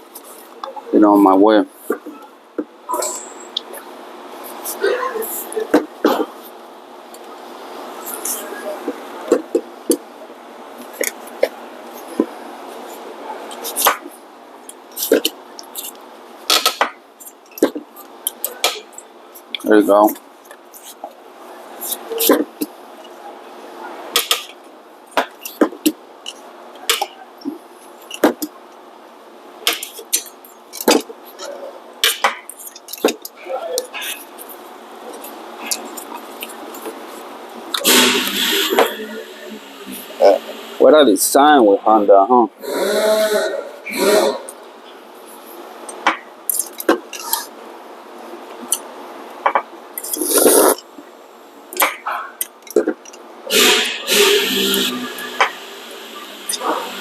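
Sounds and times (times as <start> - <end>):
loud squishing burst: 37.8 - 40.8.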